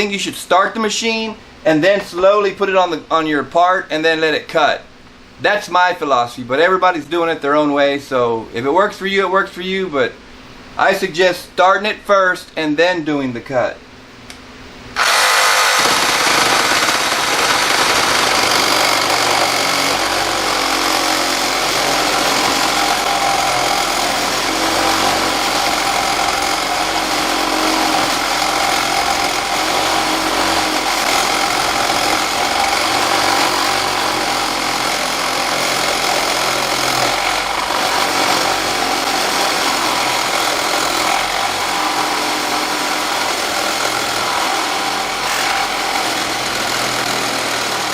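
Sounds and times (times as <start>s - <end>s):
reciprocating saw cutting metal pipe: 15.0s - 47.9s.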